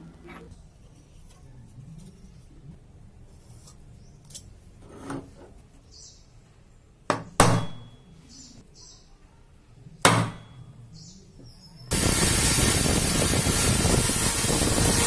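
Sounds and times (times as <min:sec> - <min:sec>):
knocks on metal workpiece: 0:07.1 - 0:07.9, 0:10.0 - 0:10.5
sharp ringing strikes on steel: 0:07.4 - 0:08.1.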